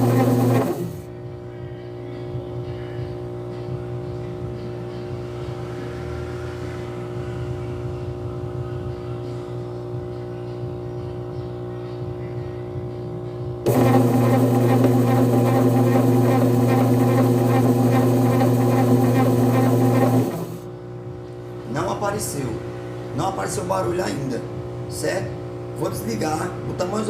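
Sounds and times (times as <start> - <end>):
washing machine motor hum: 0.0 - 1.1, 13.6 - 20.7.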